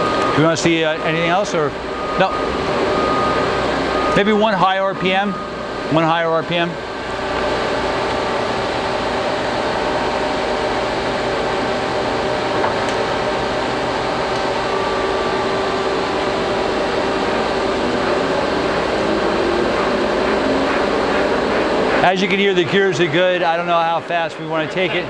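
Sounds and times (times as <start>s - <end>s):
lathe humming and whirring: 0.0s - 25.0s.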